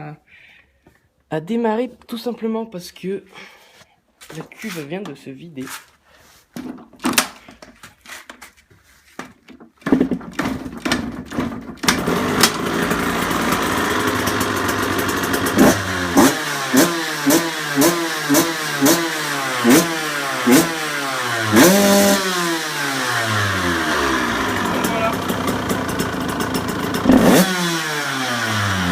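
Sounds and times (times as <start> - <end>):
dirt bike engine sputtering: 9.8 - 28.9
dirt bike engine idling: 11.1 - 28.9
dirt bike engine revving: 11.8 - 28.9.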